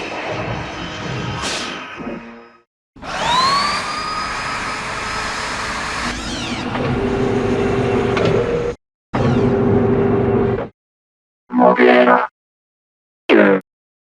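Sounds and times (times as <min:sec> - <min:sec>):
mechanical whine rising in pitch: 0:02.0 - 0:08.1.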